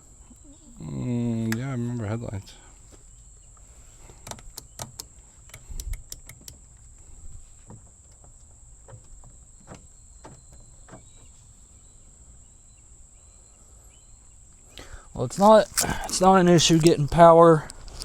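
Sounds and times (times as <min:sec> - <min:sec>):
sharp mechanical clicks of controls: 0:04.2 - 0:06.6.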